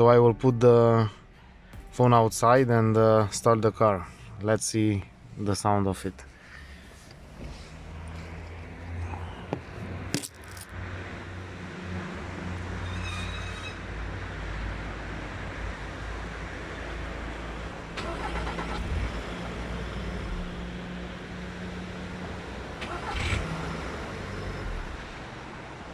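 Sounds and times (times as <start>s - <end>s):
car engine idling: 17.2s - 25.9s
starter motor cranking: 18.0s - 19.1s.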